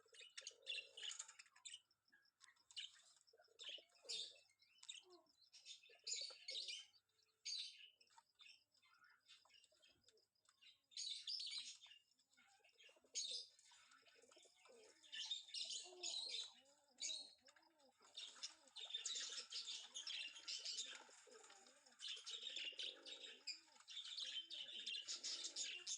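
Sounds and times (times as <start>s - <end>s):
pigeons cooing: 0.0s - 1.6s, 3.3s - 4.4s, 12.5s - 25.9s
small birds chirping: 0.0s - 25.9s.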